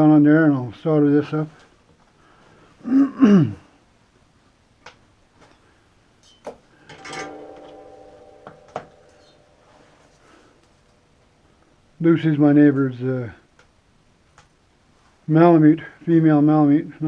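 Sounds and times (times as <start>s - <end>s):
metal object ringing: 6.9s - 10.9s.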